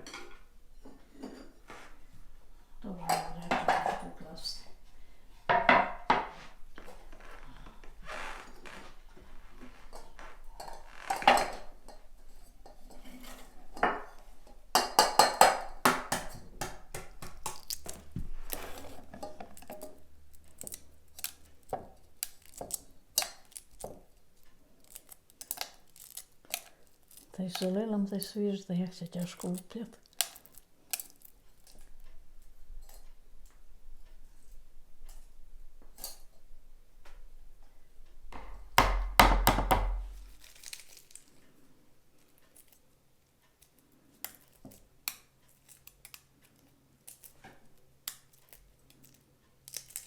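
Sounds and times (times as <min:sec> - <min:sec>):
kitchenware clattering: 0:00.0 - 0:01.7, 0:03.1 - 0:04.2, 0:05.5 - 0:06.4, 0:09.9 - 0:17.6, 0:18.7 - 0:20.0.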